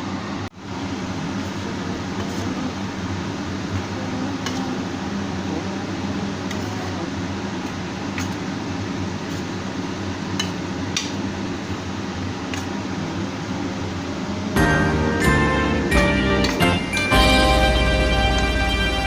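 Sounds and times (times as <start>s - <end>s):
steady low hum: 0.0s - 19.0s
utensils clinking against dishes: 6.5s - 7.0s, 16.0s - 17.5s.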